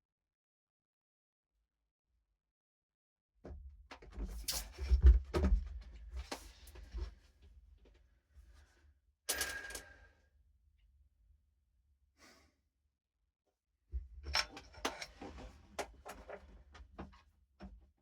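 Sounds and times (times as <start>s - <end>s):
tools and parts clicking and rustling: 9.3s - 10.0s, 14.2s - 16.4s.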